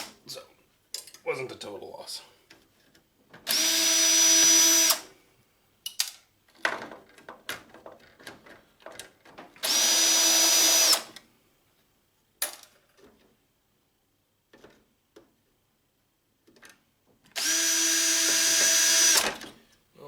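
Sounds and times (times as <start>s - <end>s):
parts clicking and rattling: 0.9s - 1.3s
power drill motor whining: 3.5s - 5.1s, 9.6s - 11.1s, 17.4s - 19.5s.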